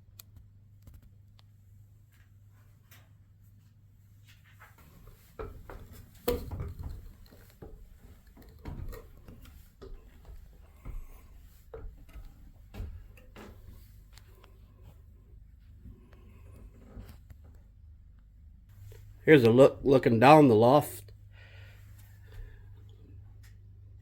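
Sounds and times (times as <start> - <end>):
low steady hum: 0.0 - 24.0.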